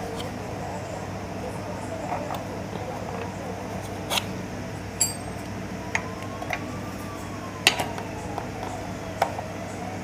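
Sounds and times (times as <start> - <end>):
steady low hum: 0.0 - 10.0
metal tools clinking: 5.0 - 5.5.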